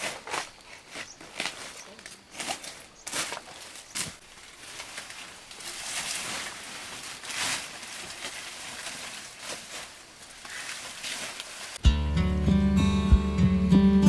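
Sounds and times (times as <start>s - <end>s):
rustling handling noise: 0.0s - 11.8s.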